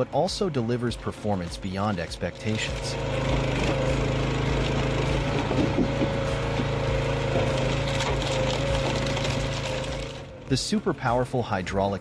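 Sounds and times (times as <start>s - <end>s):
engine running steadily: 0.0s - 12.0s.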